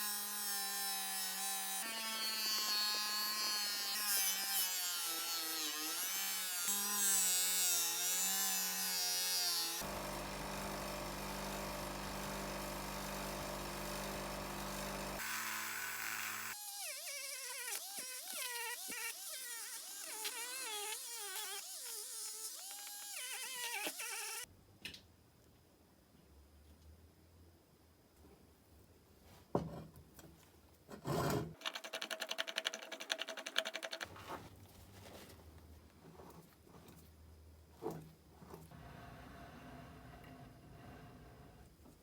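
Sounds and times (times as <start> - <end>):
rotary polishing tool whining: 9.8 - 24.5.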